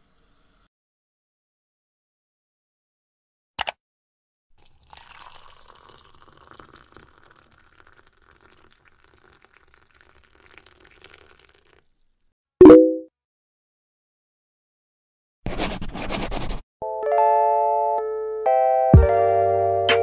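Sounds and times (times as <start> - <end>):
water pouring with drips: 4.6 - 12.3.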